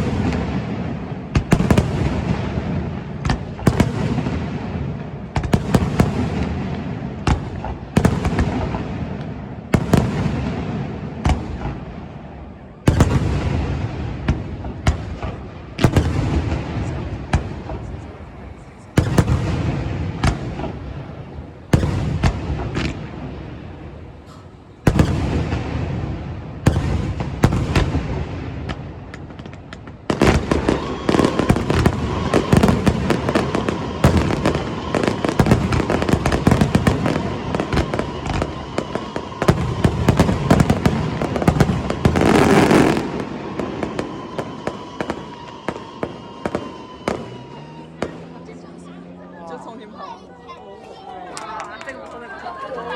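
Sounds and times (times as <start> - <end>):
firework crackles: 0.0 - 49.2.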